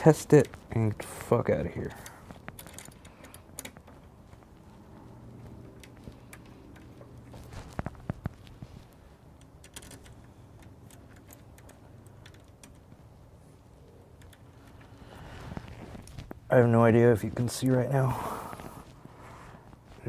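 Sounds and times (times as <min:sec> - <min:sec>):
low steady hum: 0:00.0 - 0:20.0
door hardware clicks and taps: 0:02.3 - 0:04.0, 0:09.4 - 0:13.0.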